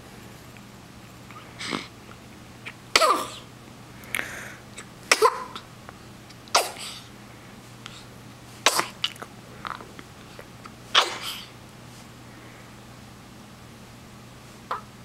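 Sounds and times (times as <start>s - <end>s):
baby hiccupping: 5.1s - 5.7s, 10.9s - 11.5s.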